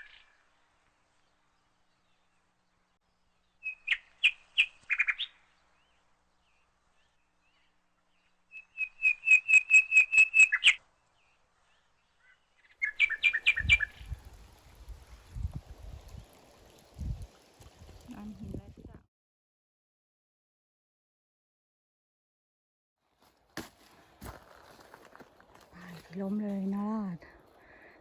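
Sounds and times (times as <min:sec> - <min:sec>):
songbird chirping: 0:00.0 - 0:18.7.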